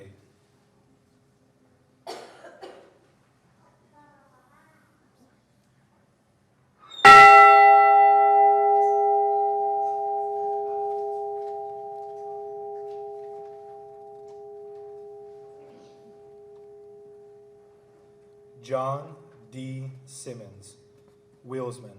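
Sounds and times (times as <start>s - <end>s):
bronze bell ringing: 7.0s - 19.1s.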